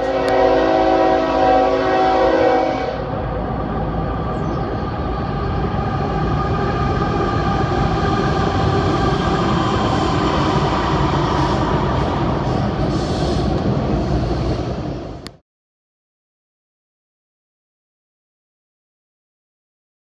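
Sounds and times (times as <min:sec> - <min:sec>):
train horn chord: 0:00.0 - 0:03.2
train wheels rumbling: 0:00.0 - 0:15.4.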